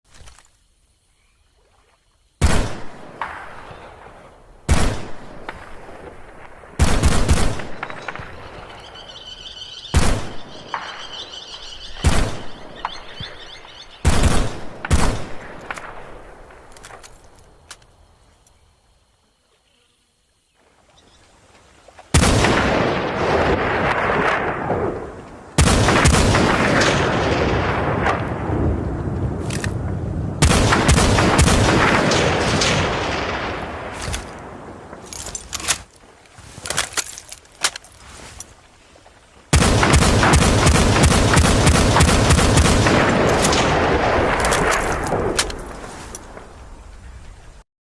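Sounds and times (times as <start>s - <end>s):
dense gunfire: 2.4s - 4.1s, 4.7s - 6.0s, 6.8s - 8.5s, 9.9s - 10.9s, 12.0s - 12.8s, 14.0s - 16.4s, 22.2s - 28.9s, 30.4s - 34.0s, 39.5s - 45.4s
rifle shots with echo: 2.4s - 8.5s, 9.9s - 11.3s, 12.0s - 13.1s, 14.0s - 16.5s, 22.2s - 28.5s, 30.4s - 33.9s, 39.5s - 45.6s
gun clicks: 14.2s - 18.6s, 29.4s - 29.8s, 33.9s - 38.5s, 44.3s - 46.4s
rapid fire: 22.2s - 34.0s, 39.5s - 45.6s.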